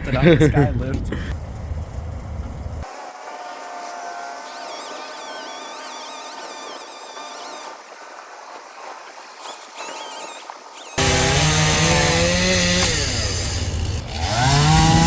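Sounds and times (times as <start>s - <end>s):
low engine rumble: 0.0s - 2.8s, 11.0s - 15.0s.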